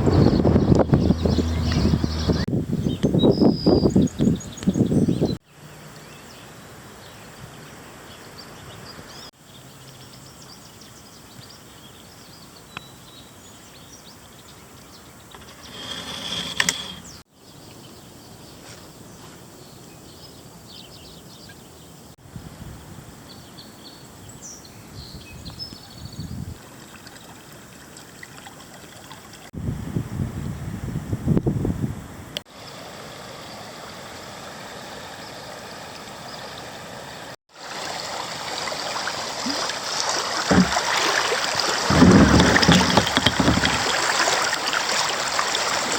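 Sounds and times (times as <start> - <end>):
flowing water rushing: 32.5 - 45.9.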